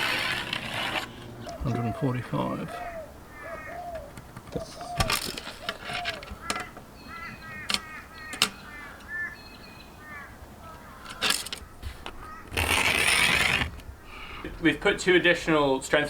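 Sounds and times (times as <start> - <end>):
bird harsh calls: 1.0 - 13.3.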